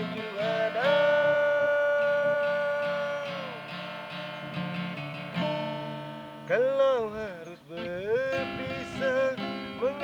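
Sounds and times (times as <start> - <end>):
person singing: 0.0 - 3.7
acoustic guitar strumming: 0.0 - 10.0.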